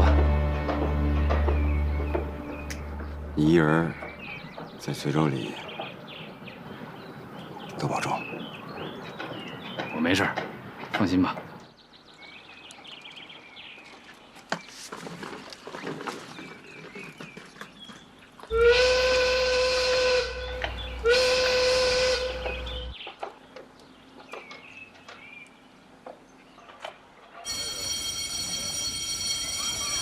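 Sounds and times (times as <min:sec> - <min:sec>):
train whistle blasts: 0:18.5 - 0:22.9.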